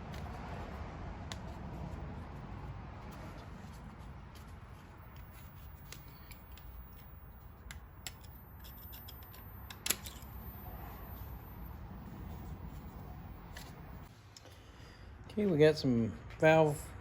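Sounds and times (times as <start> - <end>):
low steady hum: 0.0 - 15.4
hands rubbing metal parts: 1.3 - 11.3
small metal clicks: 5.1 - 10.5.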